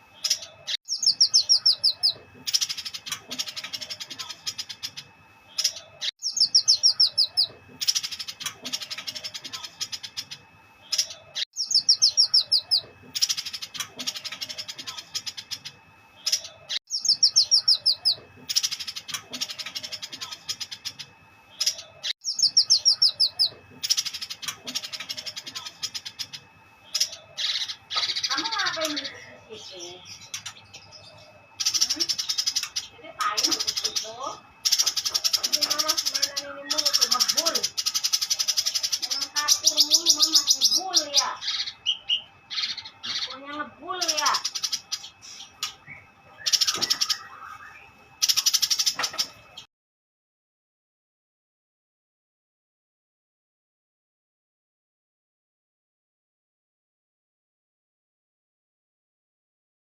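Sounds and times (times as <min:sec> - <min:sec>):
bird singing chirps: 0:00.0 - 0:49.7.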